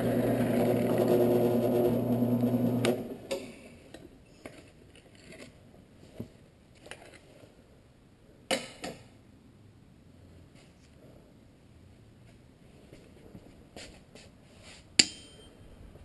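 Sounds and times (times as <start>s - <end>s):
sharp metal clanks: 15.0s - 15.6s.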